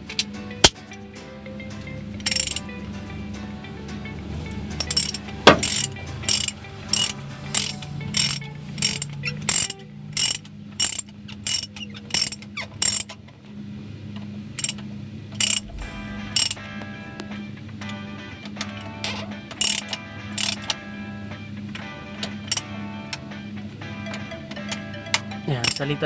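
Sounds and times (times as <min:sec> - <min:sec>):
ratchet wrench clicking: 0:04.8 - 0:13.1
steady low hum: 0:15.1 - 0:18.1.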